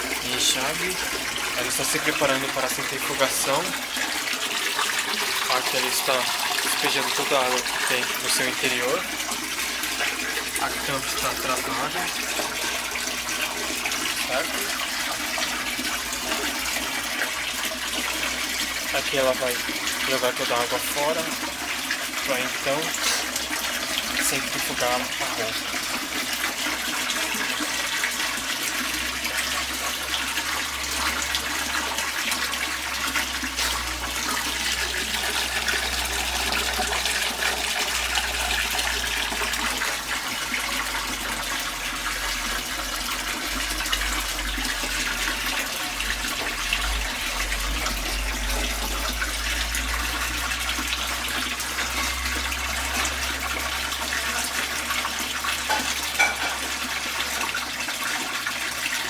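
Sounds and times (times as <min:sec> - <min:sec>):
washing machine draining water: 0:00.0 - 0:59.0.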